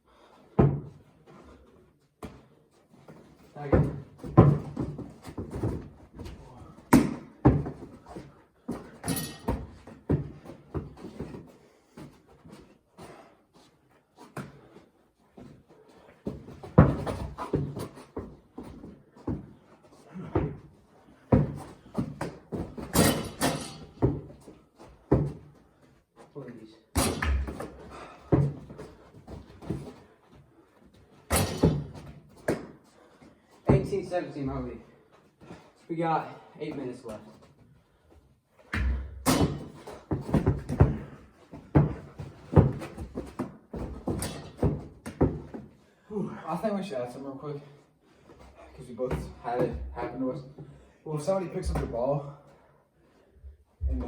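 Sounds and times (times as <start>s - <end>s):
basketball bouncing on hard floor: 0.6s - 1.0s, 3.7s - 8.0s, 16.3s - 19.5s, 21.3s - 25.4s, 27.0s - 30.0s, 31.3s - 32.8s, 38.7s - 45.7s.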